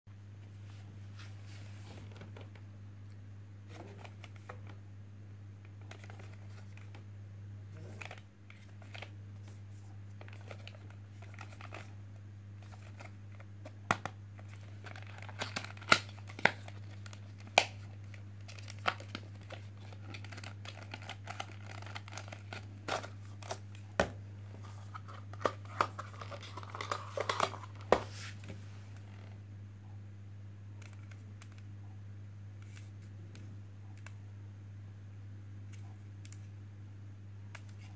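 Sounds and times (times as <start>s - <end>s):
steady low hum: 0.1s - 37.9s
plastic packaging crinkling and tearing: 12.6s - 23.7s, 24.6s - 27.9s.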